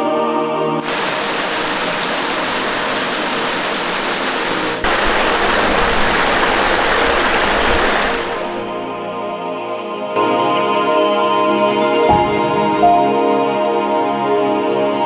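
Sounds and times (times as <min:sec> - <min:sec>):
stream rushing over cascades: 0:00.8 - 0:08.9.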